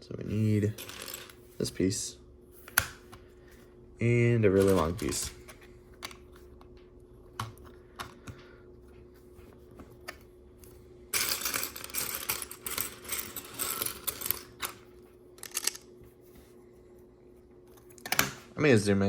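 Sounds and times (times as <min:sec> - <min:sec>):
plastic toy bricks clattering: 0:15.4 - 0:15.8.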